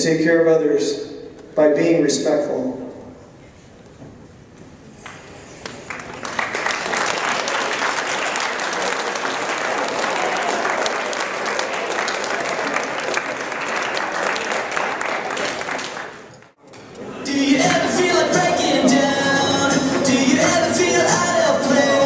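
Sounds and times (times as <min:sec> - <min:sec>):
audience applauding: 0:05.0 - 0:16.6.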